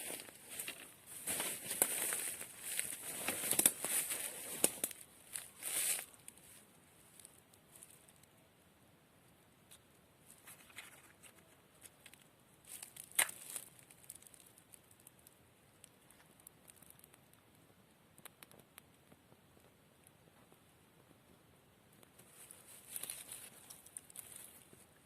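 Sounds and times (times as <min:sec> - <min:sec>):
tinder and twigs crackling: 0:00.0 - 0:08.4, 0:09.7 - 0:21.1, 0:21.9 - 0:25.0
sharp crack: 0:12.9 - 0:14.2.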